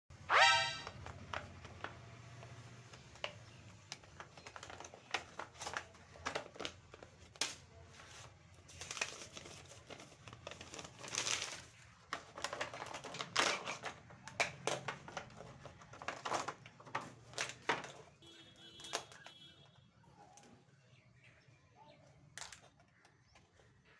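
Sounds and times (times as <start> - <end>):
packaging crinkling and rustling: 0.9 - 19.5.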